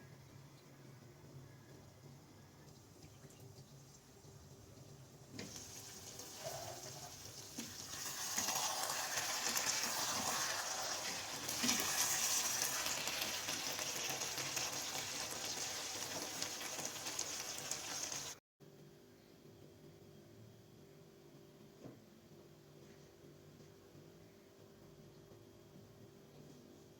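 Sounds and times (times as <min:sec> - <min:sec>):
food sizzling in a pan: 0:04.0 - 0:18.4.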